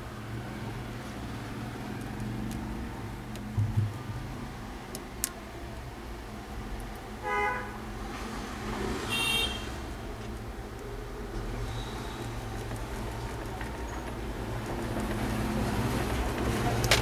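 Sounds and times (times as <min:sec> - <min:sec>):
vehicle horn toots: 0:07.2 - 0:07.8, 0:09.0 - 0:09.8.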